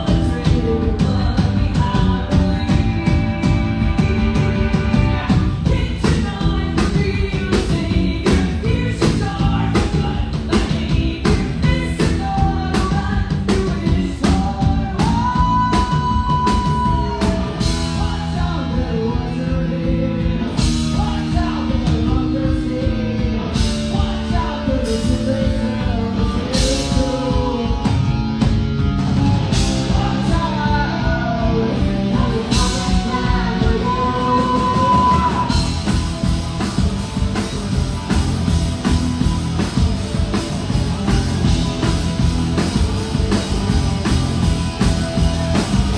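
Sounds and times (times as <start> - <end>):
person singing: 0.0 - 28.1, 29.5 - 36.1
live rock band playing: 0.0 - 45.9.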